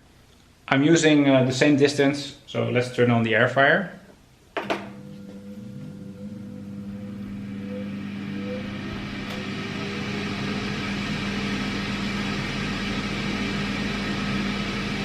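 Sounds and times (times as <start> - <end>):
air fryer fan humming: 4.6 - 15.0.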